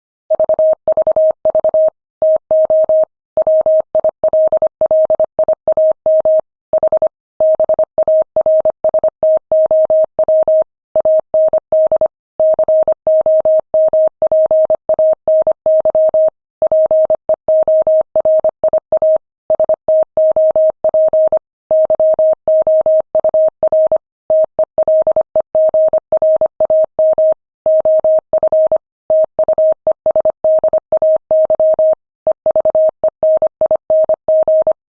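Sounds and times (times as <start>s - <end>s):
morse code tone beeping: 15.7s - 34.8s.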